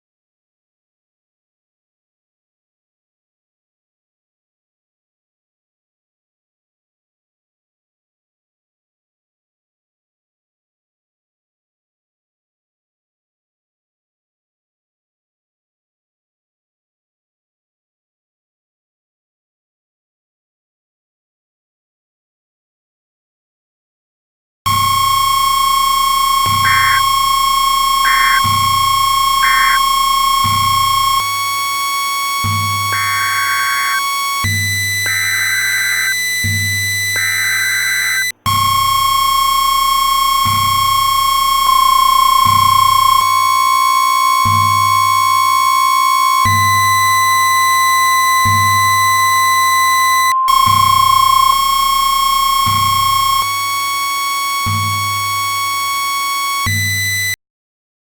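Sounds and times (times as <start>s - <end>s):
low bass pulse: 24.7s - 31.5s, 36.4s - 43.2s, 50.5s - 53.4s
synthesized high tones: 24.7s - 54.9s
short chirping blips: 24.8s - 38.9s.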